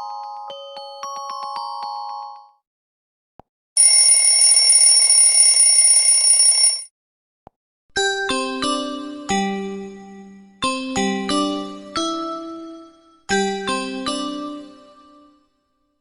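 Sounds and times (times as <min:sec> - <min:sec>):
glockenspiel-like ringtone melody: 0:00.0 - 0:02.6, 0:03.8 - 0:06.8
old telephone bell ringing: 0:03.8 - 0:06.9.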